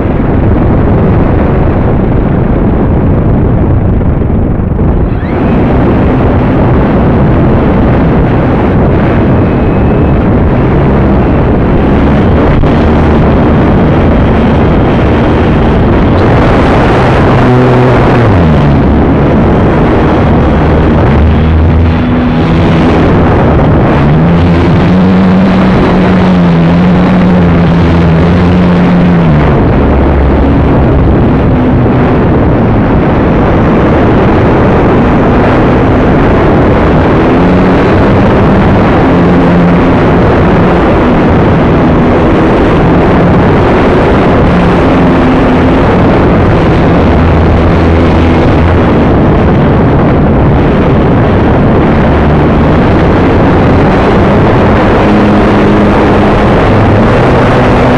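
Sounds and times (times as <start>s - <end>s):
wind noise on microphone: 0.0s - 57.9s
electric motor and propeller whirring: 4.8s - 31.3s.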